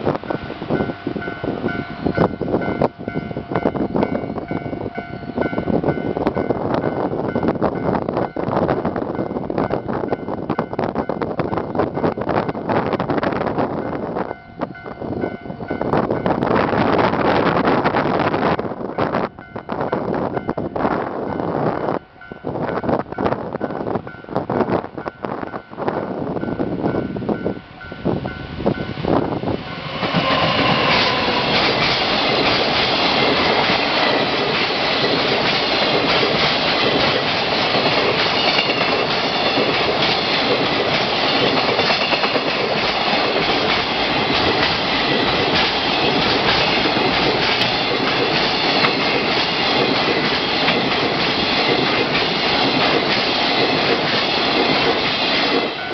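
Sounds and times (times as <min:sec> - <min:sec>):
freight train wheels rumbling: 0:00.0 - 0:55.9
wheels clacking over rail joints: 0:29.6 - 0:55.9.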